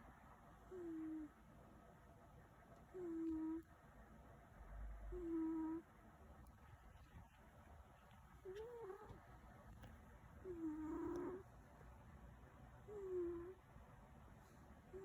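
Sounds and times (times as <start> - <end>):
cat snoring: 0.7 - 1.4, 2.9 - 3.6, 5.1 - 5.9, 8.4 - 9.2, 10.4 - 11.5, 12.8 - 13.6.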